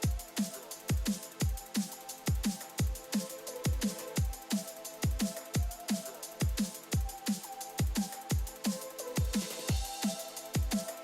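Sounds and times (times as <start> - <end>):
electronic music: 0.0 - 11.0.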